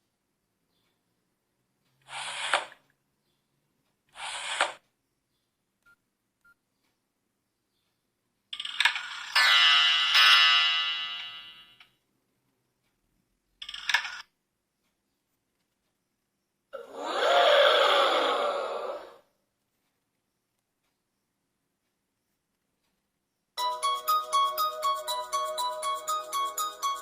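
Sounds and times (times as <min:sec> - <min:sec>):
mobile phone ringtones: 0:23.6 - 0:27.0.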